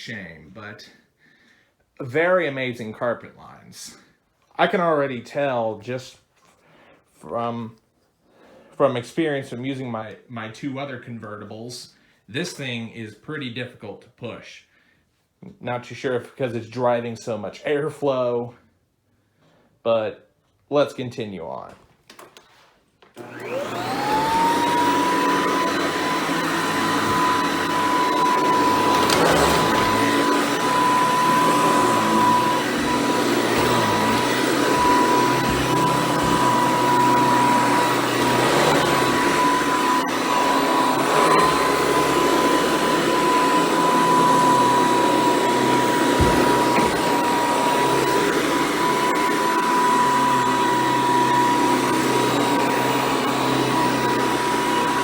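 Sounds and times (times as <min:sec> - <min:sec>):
vacuum cleaner motor whine: 0:23.2 - 0:55.0.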